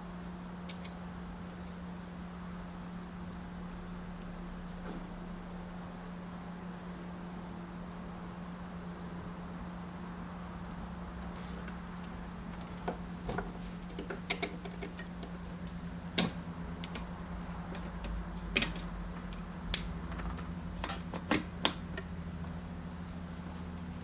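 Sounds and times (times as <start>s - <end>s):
steady low hum: 0.0s - 24.0s
tools clicking and tapping: 12.6s - 15.4s, 16.1s - 19.5s.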